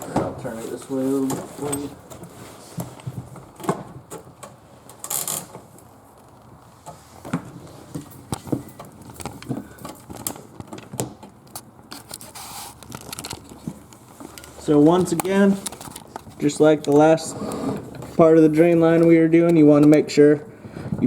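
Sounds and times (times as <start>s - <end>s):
hose handling clicks and knocks: 2.1s - 17.1s.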